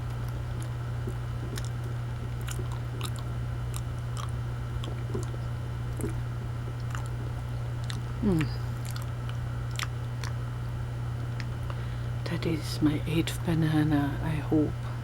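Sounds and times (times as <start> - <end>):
person chewing: 0.0 - 10.4
steady low hum: 0.0 - 15.0.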